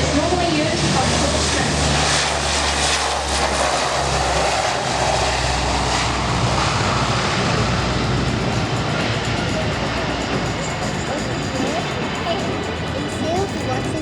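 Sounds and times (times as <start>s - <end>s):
turboprop engines at full power: 0.0s - 14.0s.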